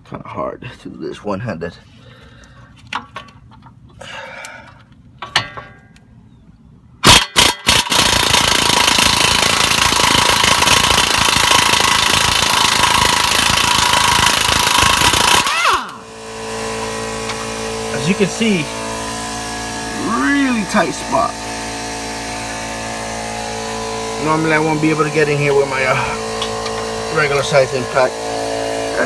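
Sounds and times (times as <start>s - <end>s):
air impact wrench hammering: 7.0s - 29.0s.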